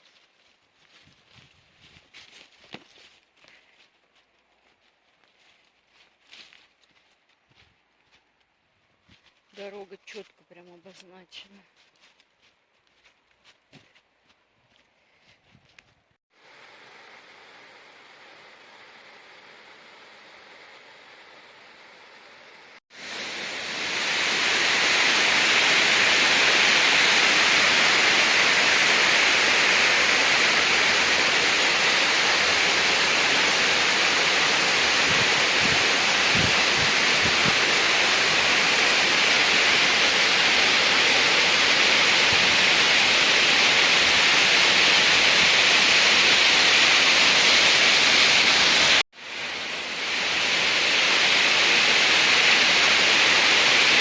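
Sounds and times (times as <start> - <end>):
waterfall roaring: 23.0 - 54.0.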